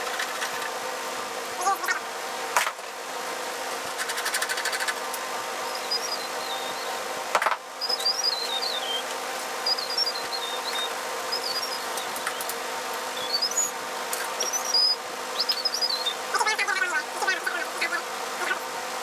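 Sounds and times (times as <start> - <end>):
steady hum: 0.0 - 19.0
bird singing warbling phrases: 5.6 - 7.0, 7.8 - 13.8, 14.4 - 18.6.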